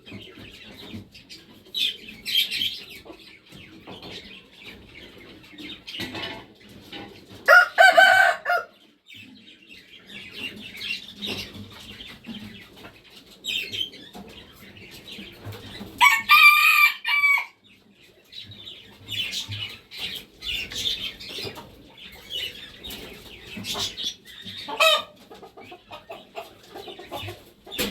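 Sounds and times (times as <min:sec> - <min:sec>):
bird calls and clucking: 0:00.0 - 0:27.9
rooster crowing: 0:07.5 - 0:08.8, 0:16.0 - 0:17.6.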